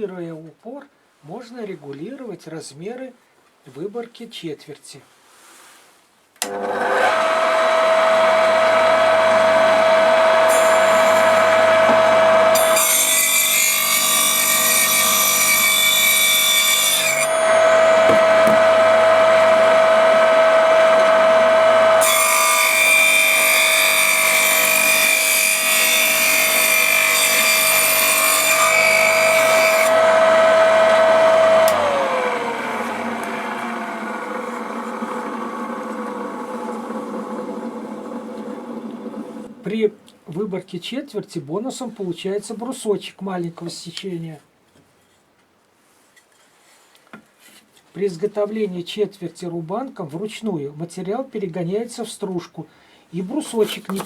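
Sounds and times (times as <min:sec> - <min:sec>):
electric motor whine: 0:06.4 - 0:12.8, 0:17.2 - 0:23.2, 0:28.5 - 0:39.6
saw disc cutting wood: 0:06.4 - 0:39.6.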